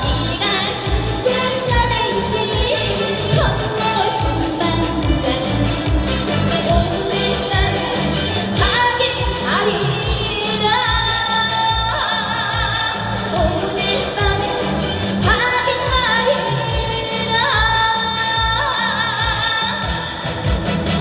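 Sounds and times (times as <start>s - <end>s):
musical accompaniment with beat: 0.0s - 21.0s
woman singing with vibrato: 0.0s - 21.0s.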